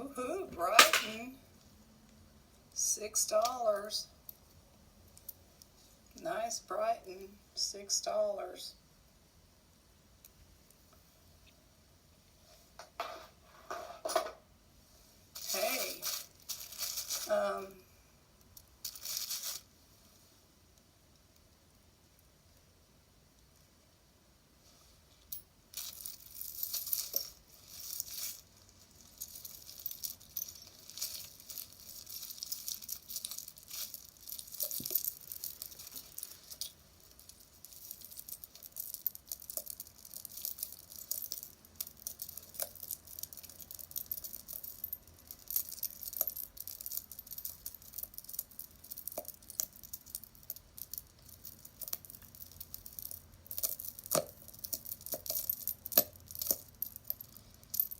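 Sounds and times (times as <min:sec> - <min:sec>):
jewelry clinking: 0:00.0 - 0:01.4, 0:15.3 - 0:17.8, 0:18.4 - 0:19.7, 0:25.2 - 0:57.9
bag crinkling and rustling: 0:15.4 - 0:17.4, 0:18.8 - 0:19.7, 0:25.8 - 0:57.9.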